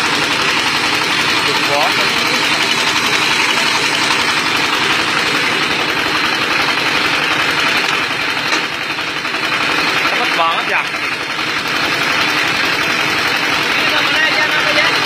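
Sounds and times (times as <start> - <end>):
brick-making machine drone: 0.0 - 15.0.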